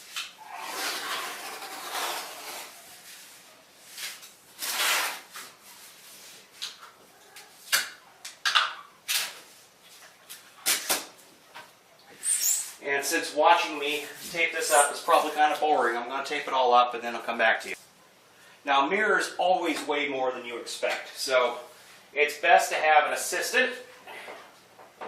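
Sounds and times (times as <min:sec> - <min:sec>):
tape ripping off a roll: 0:00.0 - 0:03.0, 0:03.9 - 0:05.6, 0:09.0 - 0:09.5, 0:10.6 - 0:11.2.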